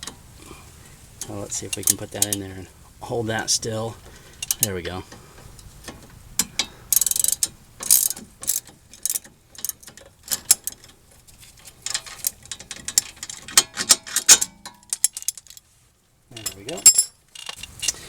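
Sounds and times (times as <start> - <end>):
hand ratchet clicking: 1.2 - 2.5, 4.2 - 11.0, 11.6 - 15.6, 16.3 - 18.0.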